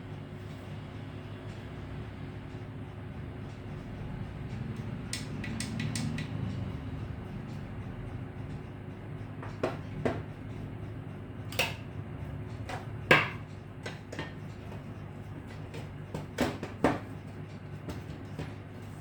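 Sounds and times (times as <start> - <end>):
steady low hum: 0.0 - 19.0
sharp knocks and clicks: 5.1 - 6.4.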